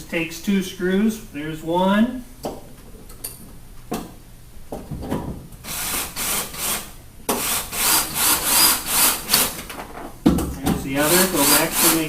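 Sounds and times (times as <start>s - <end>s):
drill driver driving screw: 5.7s - 9.6s, 11.1s - 12.0s.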